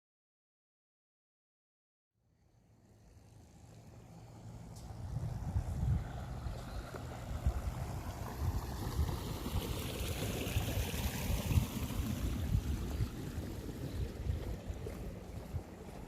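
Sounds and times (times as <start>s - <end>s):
wind buffeting microphone: 4.9s - 16.0s.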